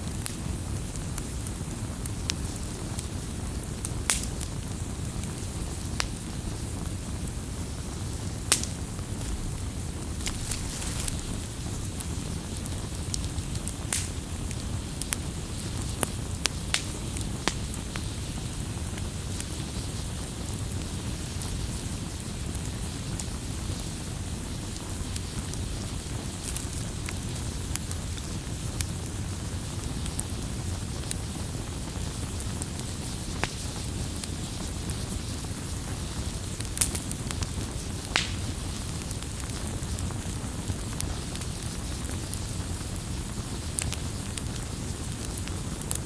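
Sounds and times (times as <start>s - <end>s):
firewood crackling and popping: 0.0s - 46.0s
low rumble of flame: 0.0s - 46.0s.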